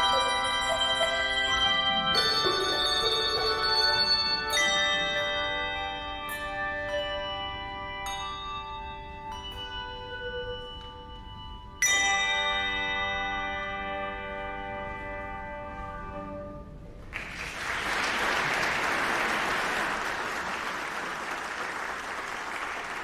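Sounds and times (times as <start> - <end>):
bells playing slow music: 0.0 - 16.9.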